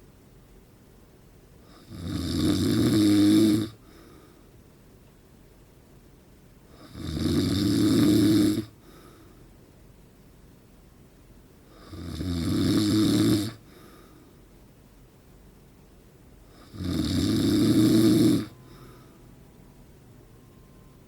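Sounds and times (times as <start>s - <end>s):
man snoring loudly: 1.7s - 3.8s, 6.8s - 8.7s, 11.8s - 13.6s, 16.5s - 18.6s.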